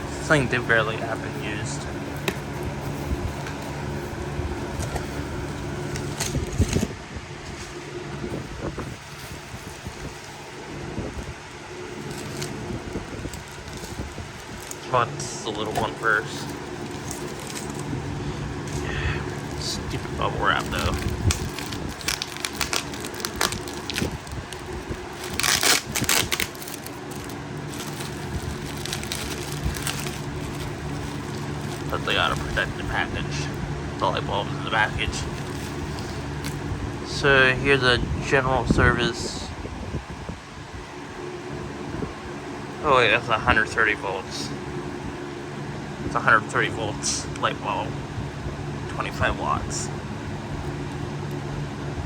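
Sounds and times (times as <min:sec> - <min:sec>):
bubble wrap rustling: 0:00.0 - 0:37.1
fan hum: 0:00.0 - 0:52.0
bubble wrap crackling: 0:00.1 - 0:36.9
packaging crinkling and clicking: 0:01.1 - 0:06.9, 0:08.8 - 0:33.0, 0:34.8 - 0:36.7.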